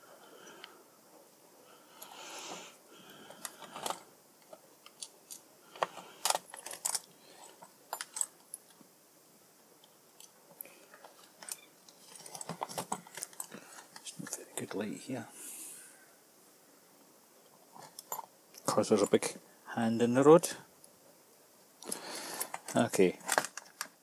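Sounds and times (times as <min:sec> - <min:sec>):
plastic parts clicking: 0:21.8 - 0:24.0.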